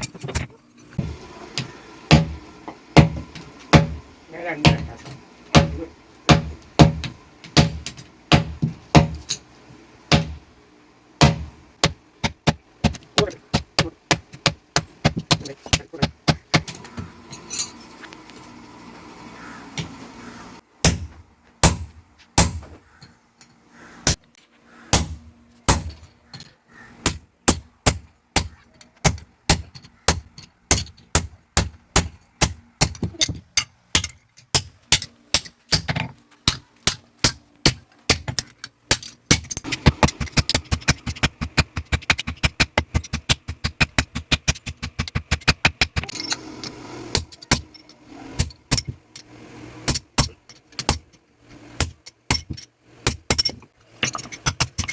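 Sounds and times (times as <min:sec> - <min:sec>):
hammer striking metal on anvil: 0:02.1 - 0:02.4, 0:03.0 - 0:04.0, 0:04.6 - 0:05.0, 0:05.6 - 0:09.4, 0:10.1 - 0:10.4, 0:11.2 - 0:16.6.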